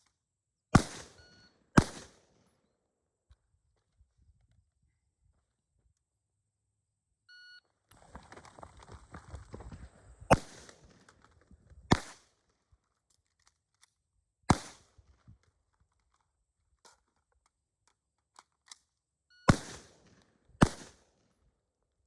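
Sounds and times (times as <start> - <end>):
gunshots: 0.8 - 1.2, 1.8 - 2.2, 10.3 - 11.0, 11.9 - 12.2, 14.5 - 14.8, 19.5 - 21.0
weapon handling clicks: 16.0 - 19.0.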